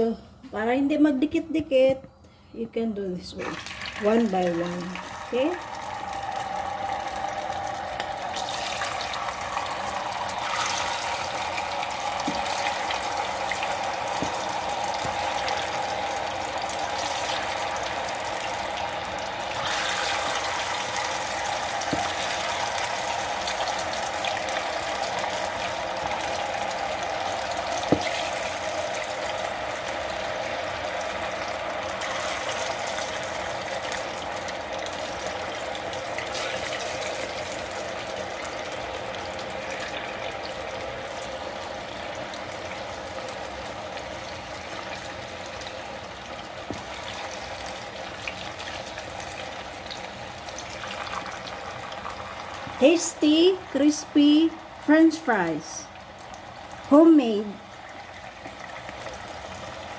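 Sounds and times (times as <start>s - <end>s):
potatoes sizzling in oil: 3.3s - 59.9s
oil popping: 5.7s - 30.5s.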